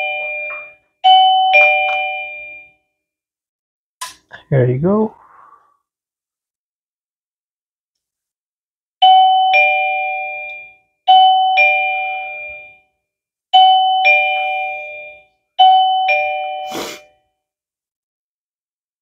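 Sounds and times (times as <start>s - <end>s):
two-note door chime: 0.0s - 2.7s, 13.6s - 16.7s.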